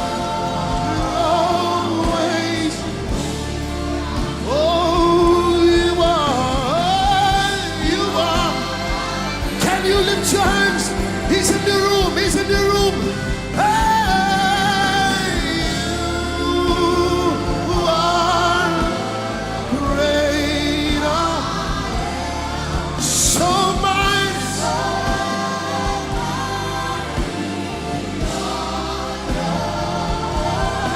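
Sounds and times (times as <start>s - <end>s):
voices singing held notes: 0.0s - 30.9s.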